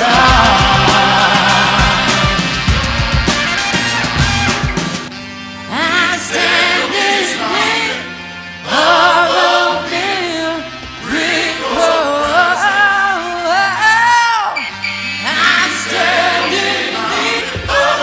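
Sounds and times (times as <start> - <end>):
person singing a song: 0.0 - 3.2, 5.7 - 8.0, 8.7 - 14.6
sustained bass notes: 0.0 - 13.2.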